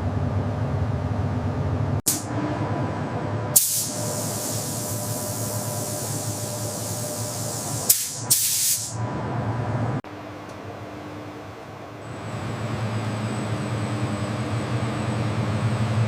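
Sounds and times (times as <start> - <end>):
loud steady hiss: 3.6 - 9.0.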